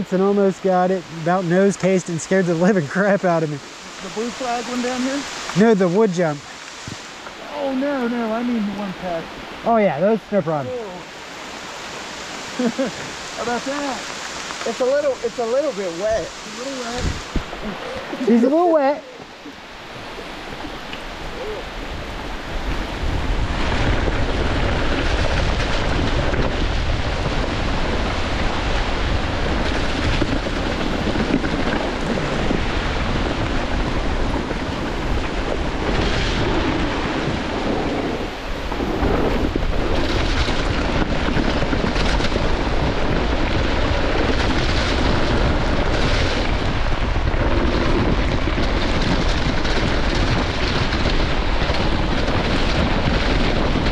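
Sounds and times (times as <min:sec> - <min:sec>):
wind buffeting microphone: 0:00.0 - 0:53.9
bike rumbling and rattling: 0:12.4 - 0:53.9.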